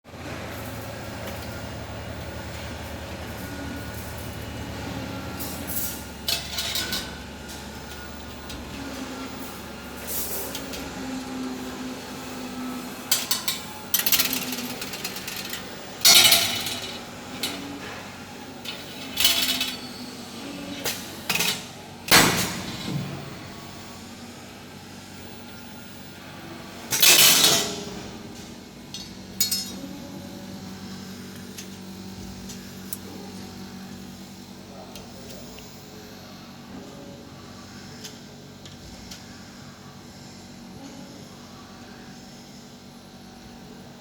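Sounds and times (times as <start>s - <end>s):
knocks and clinks of hard objects: 28.9s - 29.8s.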